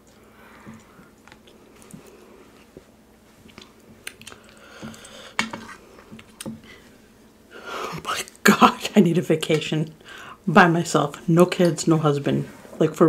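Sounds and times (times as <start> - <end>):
chewing food: 0.0 - 6.8.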